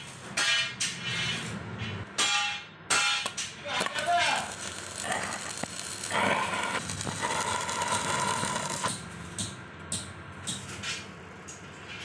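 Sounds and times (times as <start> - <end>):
welding arc crackling: 3.3 - 9.1.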